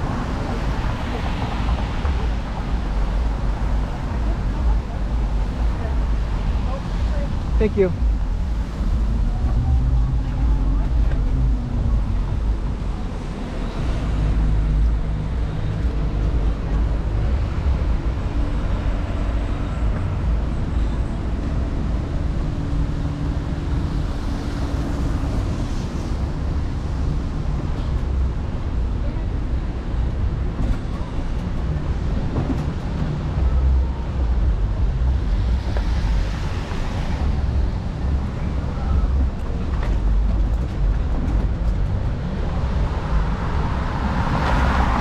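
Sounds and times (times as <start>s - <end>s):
vehicles passing: 0.0s - 45.0s
engine humming: 27.8s - 45.0s.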